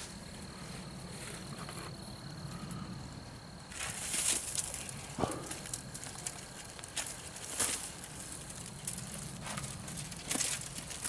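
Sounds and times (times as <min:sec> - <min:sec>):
rustling: 0:03.7 - 0:11.0.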